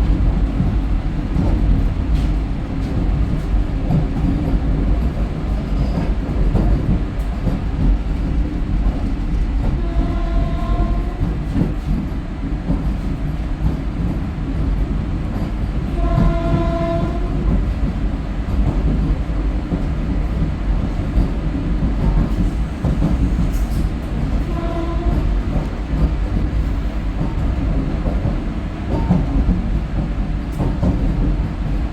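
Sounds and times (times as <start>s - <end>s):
electric train rumbling: 0.0s - 31.9s
train horn blasts: 9.8s - 11.3s, 15.9s - 17.5s, 24.4s - 25.6s.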